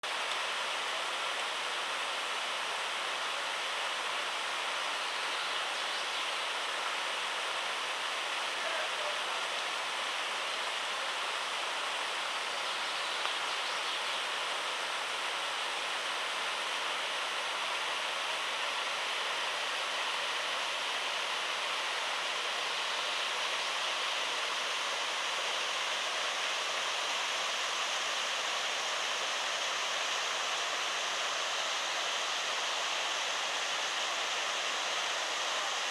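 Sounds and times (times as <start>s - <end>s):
waterfall splashing: 14.3s - 35.9s.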